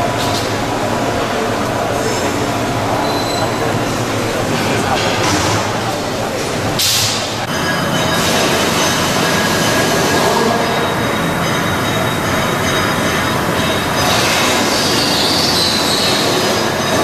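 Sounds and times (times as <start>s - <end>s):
train rolling on rails: 0.0s - 17.0s
high wheel squeal: 2.9s - 4.0s, 7.5s - 17.0s.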